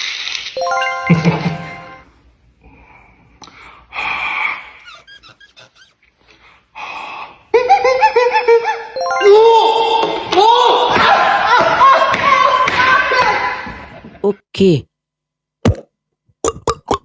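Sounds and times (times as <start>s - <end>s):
mouth squeaks beatbox-style: 0.0s - 0.6s, 4.5s - 6.1s.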